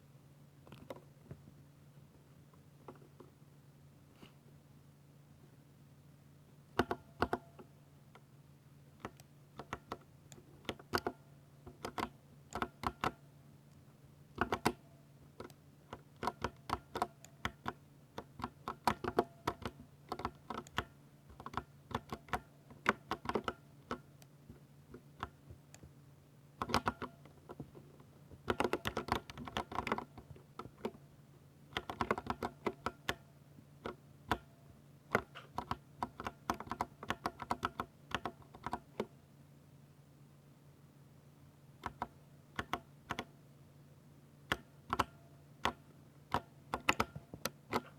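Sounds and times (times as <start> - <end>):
faint low hum: 0.0 - 47.9
mechanical keyboard typing: 9.0 - 13.2, 14.4 - 14.8, 15.4 - 24.0, 26.6 - 27.6, 28.4 - 31.0, 31.8 - 33.2, 35.1 - 39.0, 41.8 - 43.3, 44.5 - 47.9.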